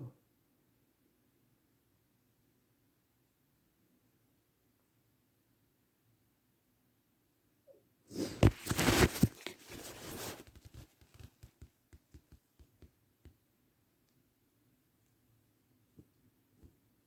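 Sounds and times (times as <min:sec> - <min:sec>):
rustling tearing noise: 0:08.2 - 0:11.6
light clicks and taps: 0:10.4 - 0:13.4.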